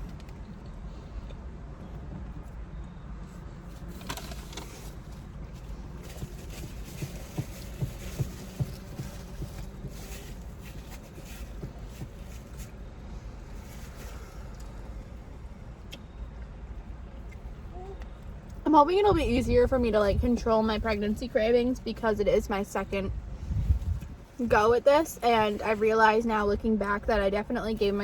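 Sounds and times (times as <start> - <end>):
low background hum: 0.0 - 28.0
eating and food handling: 3.3 - 19.5.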